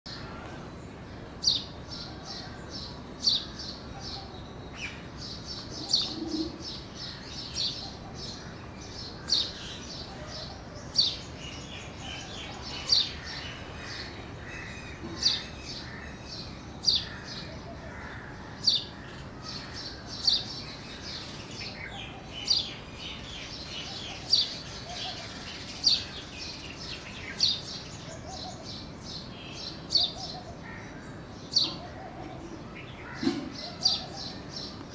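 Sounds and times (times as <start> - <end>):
other birds chirping: 0.1 - 34.9
sparrow chirping: 19.8 - 30.6.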